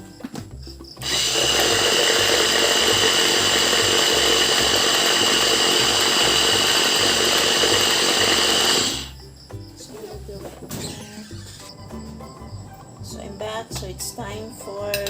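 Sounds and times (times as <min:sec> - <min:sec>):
electric blender motor running: 0:01.0 - 0:09.1.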